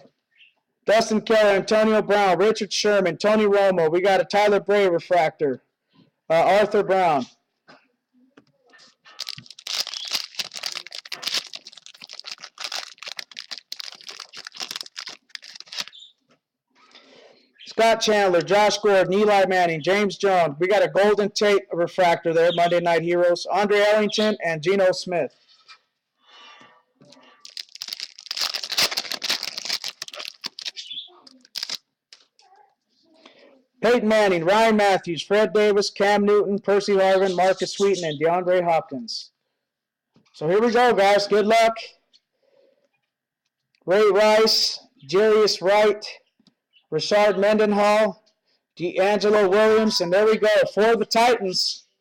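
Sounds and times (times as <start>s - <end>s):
cards being handled: 9.1s - 16.0s, 27.5s - 32.4s
plastic wrapper tearing and crinkling: 9.1s - 16.0s, 27.4s - 32.3s.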